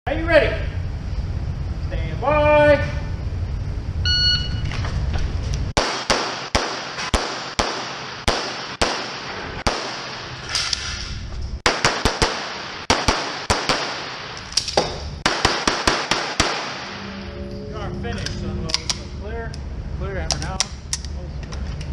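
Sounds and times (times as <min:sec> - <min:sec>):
rapid pistol fire: 0:05.8 - 0:10.4, 0:11.6 - 0:14.4, 0:15.2 - 0:17.0.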